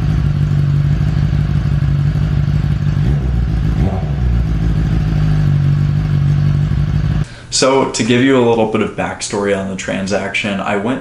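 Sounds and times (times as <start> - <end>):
motorcycle engine running: 0.0 - 7.2.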